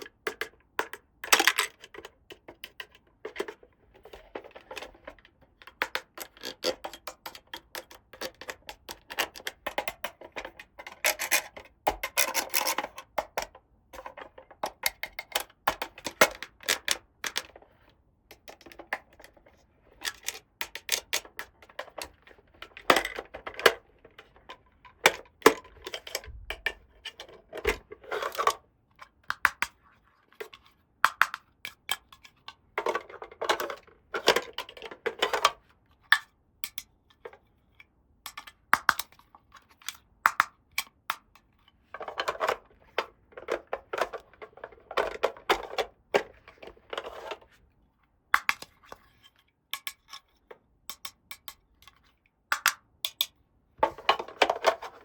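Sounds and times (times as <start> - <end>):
plastic pieces scraping and rattling: 0.0 - 29.8, 30.4 - 35.6, 41.9 - 47.6, 53.8 - 55.0
plastic toy pieces clicking: 20.0 - 23.8, 48.4 - 48.7.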